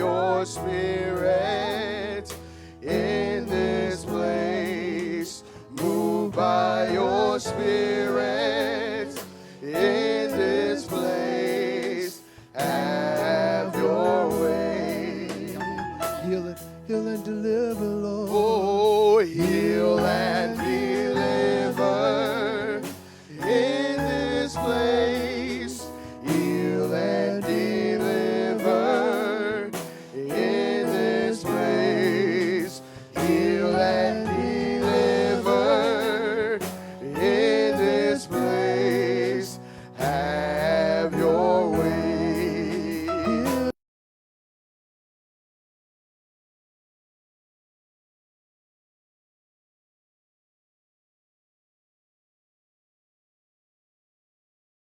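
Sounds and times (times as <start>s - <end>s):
gospel singing with vibrato: 0.0s - 43.8s.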